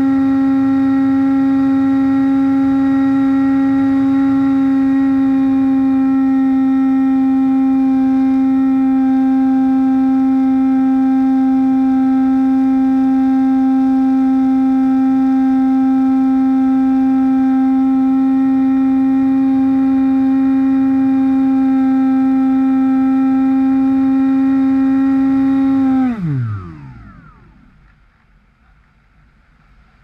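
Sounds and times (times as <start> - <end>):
motor spinning propeller drone: 0.0 - 30.0.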